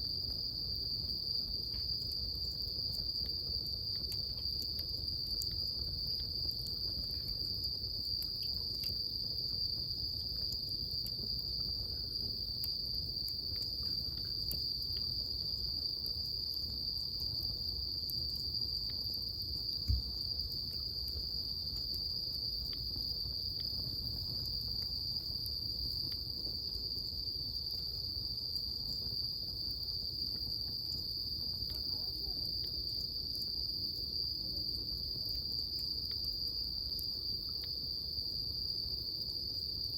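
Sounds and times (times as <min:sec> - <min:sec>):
bonfire crackling: 0:00.0 - 0:39.9
crickets chirping: 0:00.0 - 0:39.9.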